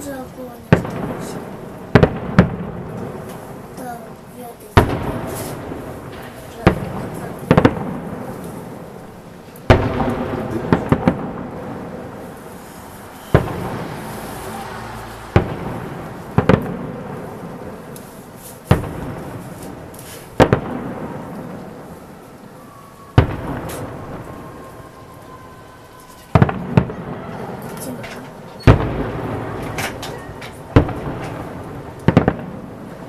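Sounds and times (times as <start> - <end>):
rolling echo and crackle: 0.0 - 33.0
firework shells bursting: 9.6 - 14.5.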